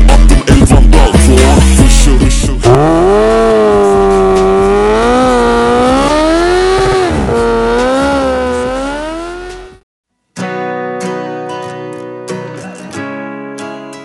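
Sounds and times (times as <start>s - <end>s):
motorcycle engine revving: 2.6s - 9.8s.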